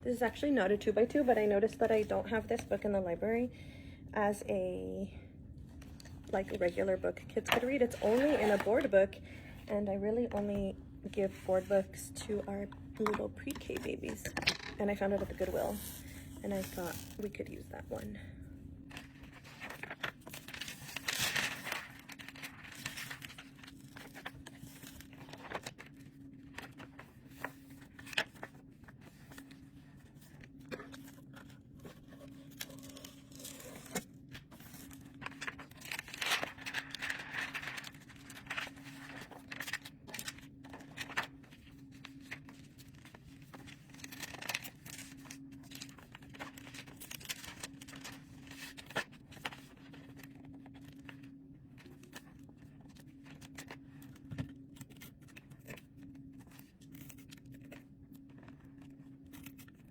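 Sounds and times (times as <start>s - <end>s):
plastic film crinkling: 34.6s - 51.3s.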